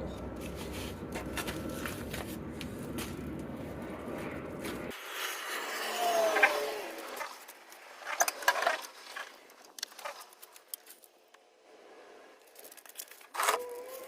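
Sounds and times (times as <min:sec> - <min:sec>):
rustling clatter: 0:12.4 - 0:14.0
small clicks and rattles: 0:12.4 - 0:14.0.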